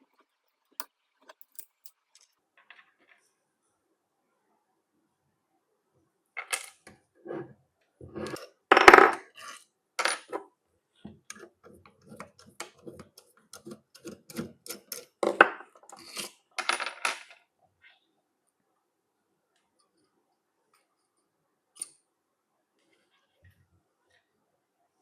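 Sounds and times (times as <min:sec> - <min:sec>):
metal parts clinking: 0:01.3 - 0:01.9.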